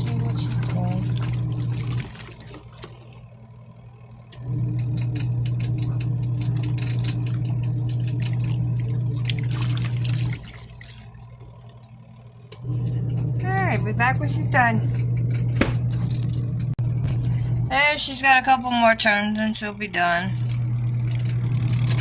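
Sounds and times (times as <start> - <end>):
water splashing and sloshing: 0.0 - 3.5, 6.2 - 12.4
washing machine motor humming: 0.0 - 22.0.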